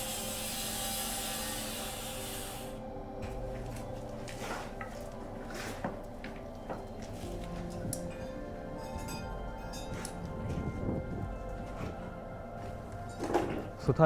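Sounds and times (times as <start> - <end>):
wood scraping: 3.2 - 7.8.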